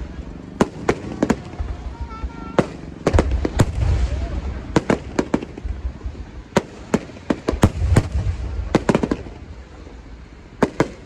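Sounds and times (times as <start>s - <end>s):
fireworks banging: 0.0s - 11.0s
low rumble: 1.4s - 6.5s, 7.6s - 10.5s.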